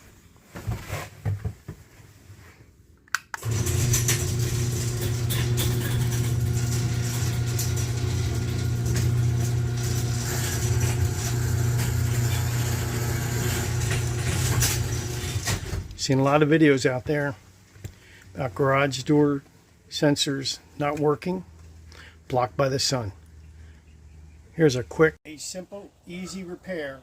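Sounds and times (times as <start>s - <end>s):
garage door opener humming: 3.4s - 16.0s.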